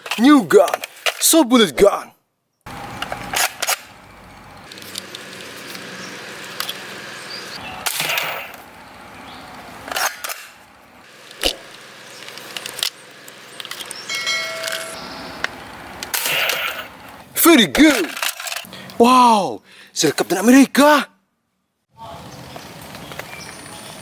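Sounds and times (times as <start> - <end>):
sharp snap: 11.4 - 11.8
cluster of high tones: 14.1 - 15.5.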